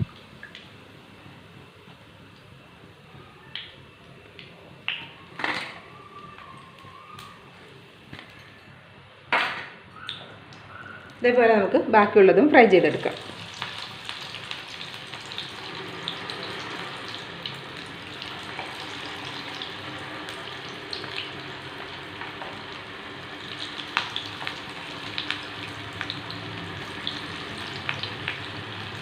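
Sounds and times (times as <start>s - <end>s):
batter deep-frying in hot oil: 0.0s - 8.6s, 12.4s - 29.0s
oil popping and crackling: 3.4s - 7.4s, 13.0s - 29.0s.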